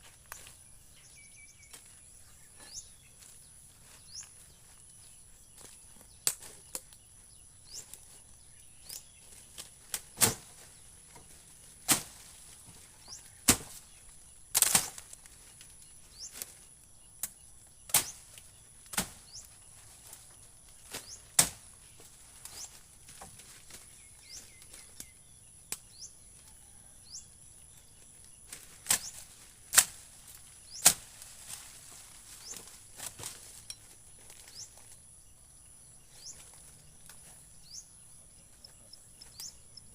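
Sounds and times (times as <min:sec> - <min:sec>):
faint bird chirps: 0:00.0 - 0:11.4, 0:23.7 - 0:29.5, 0:32.3 - 0:39.9
blade chopping wooden branches: 0:06.2 - 0:07.0, 0:08.8 - 0:11.2, 0:11.8 - 0:12.8, 0:13.4 - 0:13.9, 0:14.5 - 0:15.2, 0:17.2 - 0:20.2, 0:20.8 - 0:21.8, 0:28.5 - 0:31.6
high insect drone: 0:31.4 - 0:39.9.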